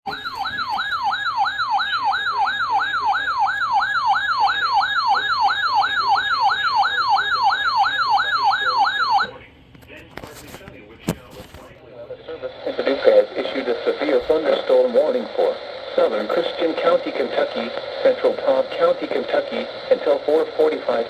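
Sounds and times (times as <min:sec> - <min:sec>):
electronic alert siren warbling: 0:00.1 - 0:09.4.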